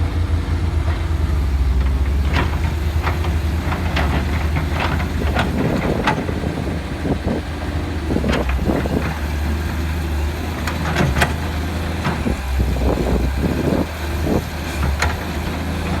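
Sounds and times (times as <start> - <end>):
machine low drone: 0.0 - 15.2
short knocks and clatter: 1.8 - 7.5, 10.6 - 12.4.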